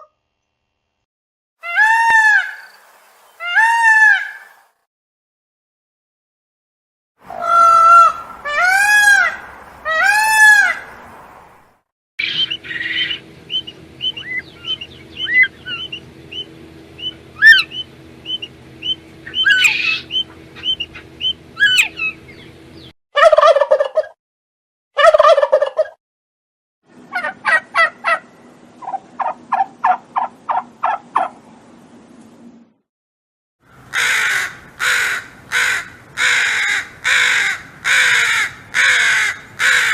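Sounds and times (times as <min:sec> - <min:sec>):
harsh bird calls: 0:07.3 - 0:11.4, 0:12.2 - 0:22.9, 0:33.7 - 0:39.9
short high bird calls: 0:12.2 - 0:22.9
steady low hum: 0:12.2 - 0:22.9.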